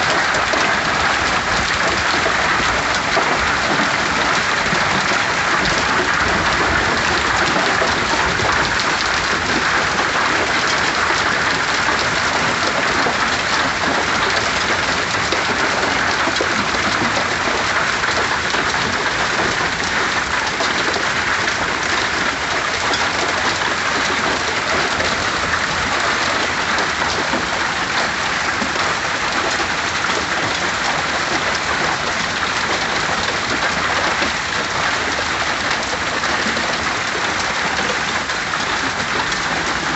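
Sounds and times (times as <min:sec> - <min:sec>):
hail and heavy rain clattering: 0:00.0 - 0:39.9.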